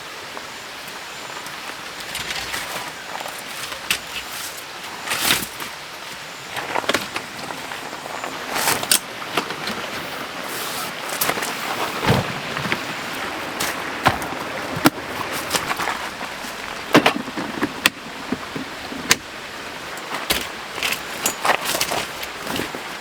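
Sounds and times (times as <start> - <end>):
rain hissing: 0.0 - 23.0
objects knocking and clattering: 11.2 - 22.9.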